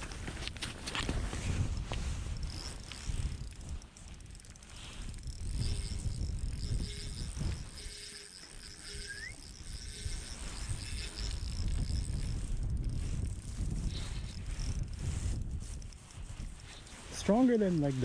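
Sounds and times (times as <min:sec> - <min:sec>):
wind rumbling on microphone: 0:00.0 - 0:18.0
faint high-pitched buzz: 0:04.7 - 0:12.4.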